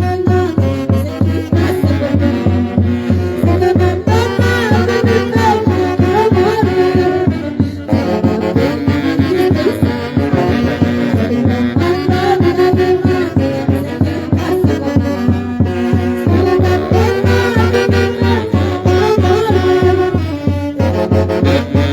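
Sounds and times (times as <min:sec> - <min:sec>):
steady bass beat: 0:00.0 - 0:21.9
wind instruments melody: 0:00.0 - 0:21.9.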